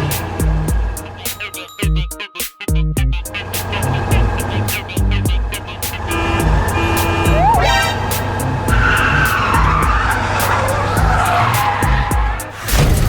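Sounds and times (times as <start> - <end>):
background music with steady beat: 0.0 - 13.0
tyre screech: 5.7 - 12.8.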